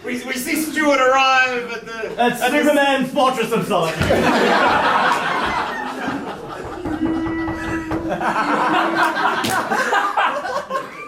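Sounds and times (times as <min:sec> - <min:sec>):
audience laughing: 0:03.8 - 0:11.0.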